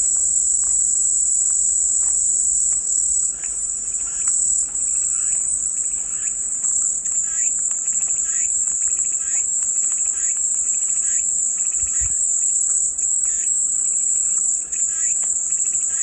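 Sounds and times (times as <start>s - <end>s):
cicadas droning: 0.0s - 16.0s.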